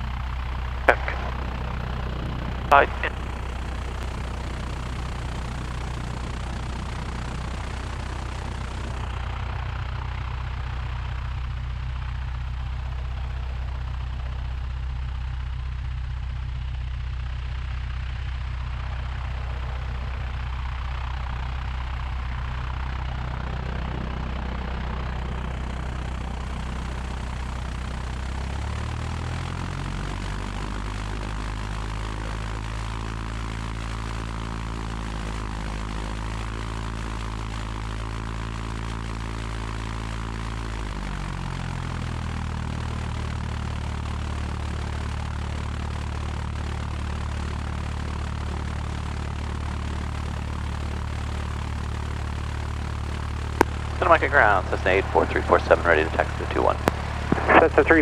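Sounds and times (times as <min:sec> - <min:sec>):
light aircraft engine idling: 0:00.0 - 0:58.0.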